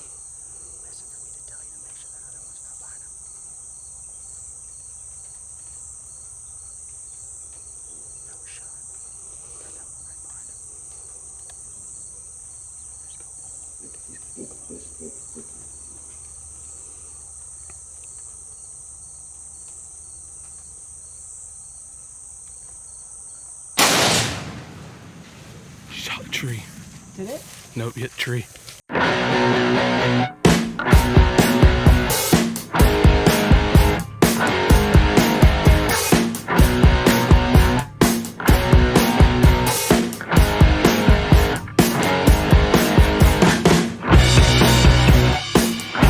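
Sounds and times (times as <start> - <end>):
high-pitched insect chorus: 0.0 - 23.8
insect trilling: 0.0 - 23.8.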